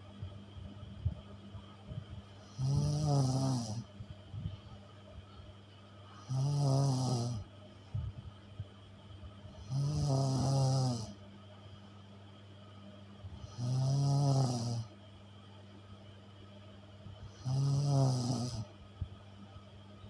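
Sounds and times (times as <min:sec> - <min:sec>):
loud buzzing snores: 0:02.4 - 0:03.9, 0:06.2 - 0:07.4, 0:09.6 - 0:11.2, 0:13.4 - 0:14.9, 0:17.3 - 0:18.7.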